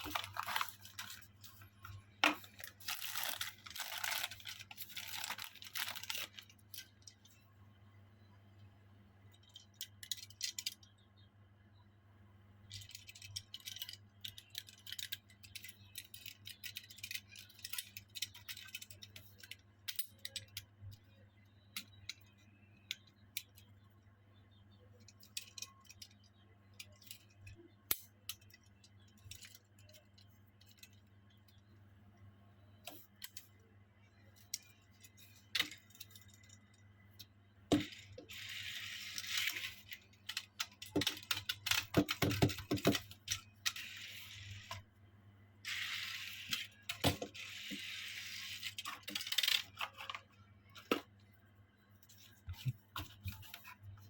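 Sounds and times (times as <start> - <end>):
packaging rustling: 0.0 - 6.9
toy cars clicking and clinking: 12.7 - 20.7, 37.8 - 44.8, 45.7 - 50.2.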